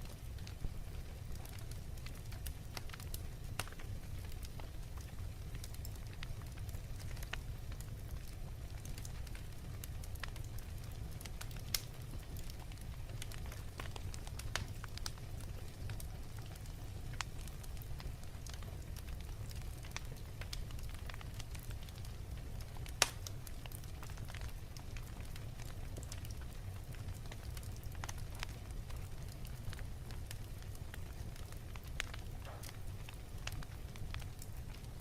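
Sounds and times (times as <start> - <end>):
fire popping: 0.0 - 35.0
wood fire crackling: 0.0 - 35.0.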